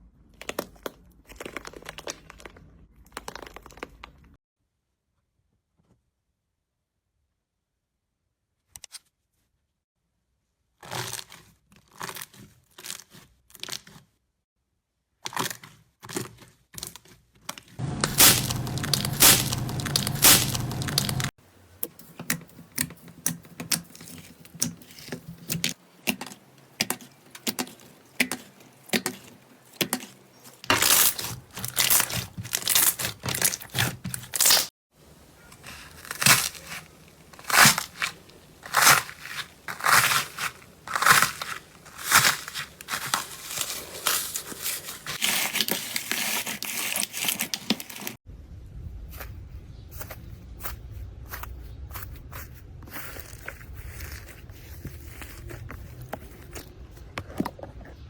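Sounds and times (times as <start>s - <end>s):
slime squelching: 0.4s - 4.3s, 17.8s - 21.3s, 22.0s - 48.2s.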